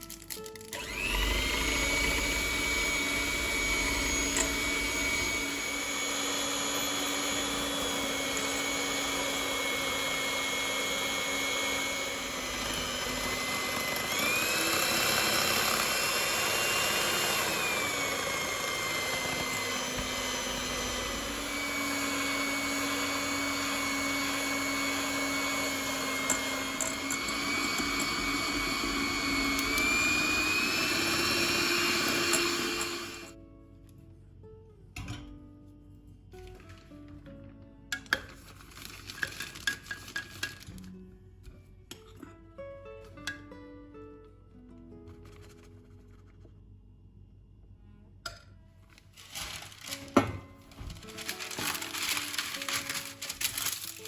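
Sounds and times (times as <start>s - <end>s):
electric mixer whirring: 0.6s - 33.4s, 51.0s - 54.0s.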